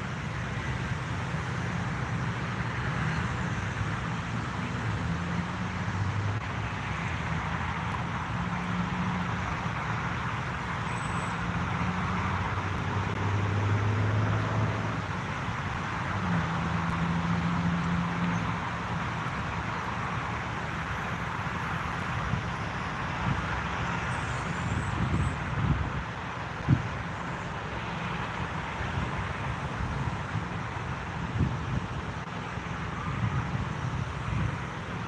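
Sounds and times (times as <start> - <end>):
distant traffic noise: 0.0 - 35.0
low engine hums: 0.0 - 35.0.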